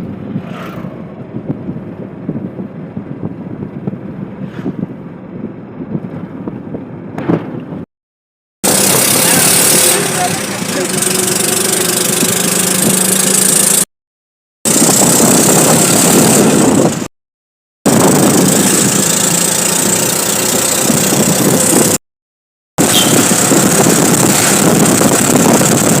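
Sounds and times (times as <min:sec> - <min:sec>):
road and wind noise: 0:00.0 - 0:07.9, 0:08.6 - 0:13.9, 0:14.7 - 0:17.1, 0:17.9 - 0:22.0, 0:22.8 - 0:26.0
auto-rickshaw engine running: 0:08.6 - 0:13.9, 0:14.7 - 0:17.1, 0:17.9 - 0:22.0, 0:22.8 - 0:26.0.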